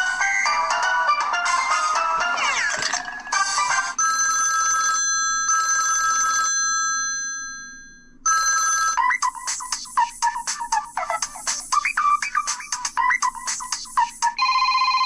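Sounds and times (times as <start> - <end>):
bell-like phone ring: 1.6 - 9.0, 14.4 - 15.0.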